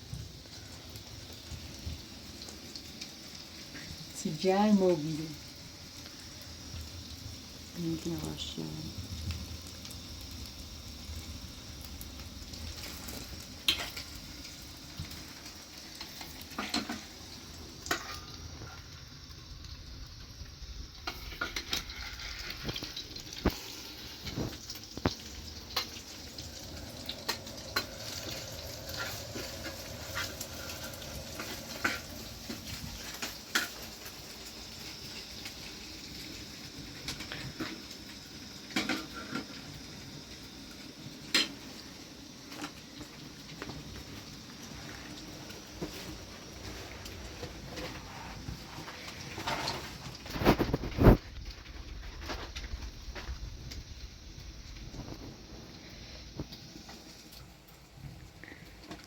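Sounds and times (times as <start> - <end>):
food sizzling: 0.0 - 59.0
pots and utensils clinking: 12.8 - 14.5, 15.1 - 18.8, 21.0 - 34.1, 38.7 - 39.7, 41.3 - 41.7, 45.8 - 51.0.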